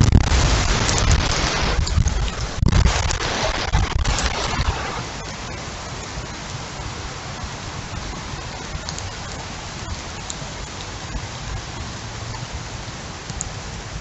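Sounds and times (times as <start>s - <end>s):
heavy rain hissing: 0.0s - 14.0s
low rumble of wind: 0.0s - 14.0s
rain drop ticks: 0.0s - 14.0s.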